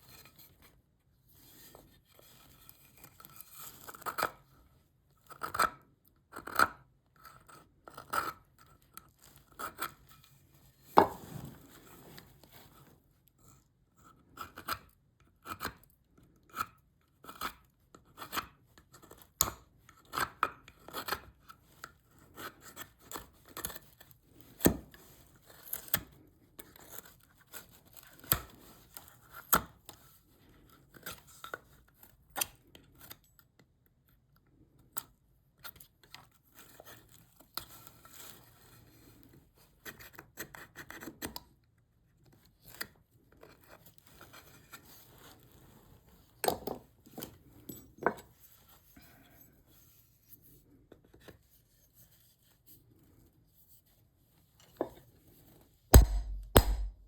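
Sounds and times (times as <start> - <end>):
hand blade shaving wood: 56.0 - 57.0.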